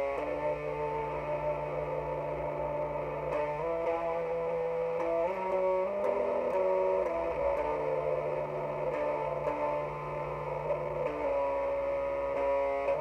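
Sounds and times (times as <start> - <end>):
electric guitar doom metal riff: 0.0 - 13.0.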